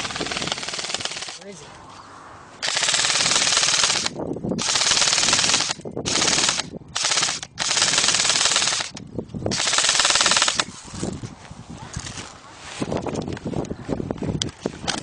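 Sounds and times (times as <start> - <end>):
airsoft gun firing full auto: 2.6 - 8.9, 9.5 - 10.6.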